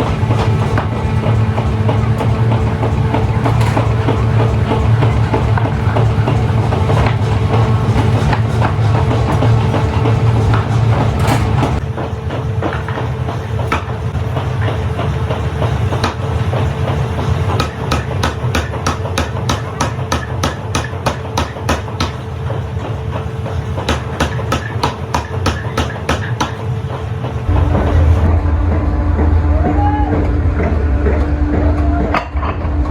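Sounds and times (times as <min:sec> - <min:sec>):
low machinery hum: 0:00.0 - 0:32.9
hammer striking metal: 0:17.6 - 0:22.2, 0:23.8 - 0:26.7.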